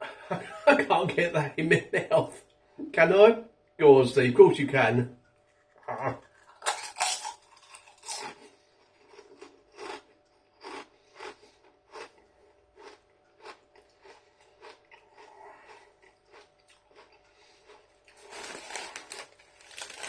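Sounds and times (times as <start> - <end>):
chewing crunchy crisp: 5.4 - 20.0.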